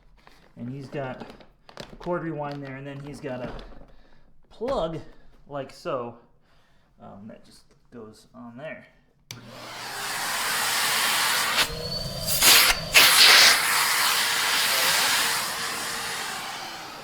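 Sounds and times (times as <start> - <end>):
vacuum cleaner running: 9.3 - 17.0.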